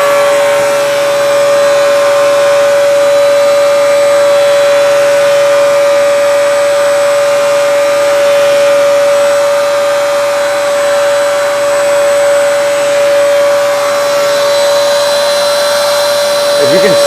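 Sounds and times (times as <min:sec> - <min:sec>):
electric clippers whining: 0:00.0 - 0:17.0
vacuum cleaner running: 0:00.0 - 0:17.0.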